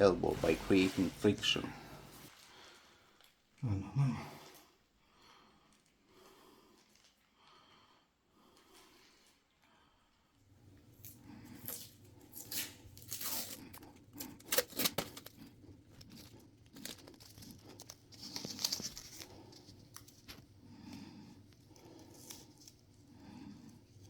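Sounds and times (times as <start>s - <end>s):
material tearing and crinkling: 11.6s - 20.5s.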